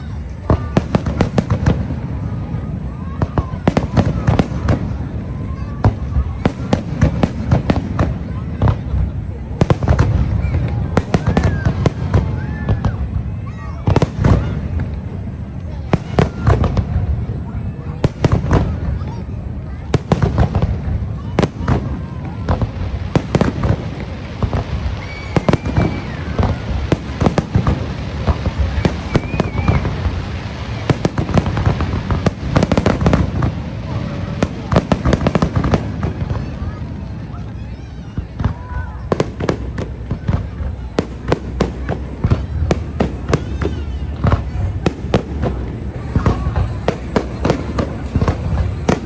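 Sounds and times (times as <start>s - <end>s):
fireworks bangs and pops: 0.0s - 49.0s.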